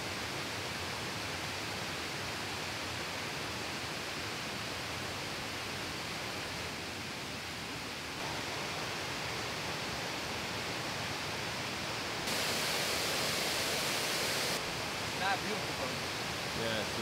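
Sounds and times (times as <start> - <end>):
waterfall rushing: 8.2 - 17.0.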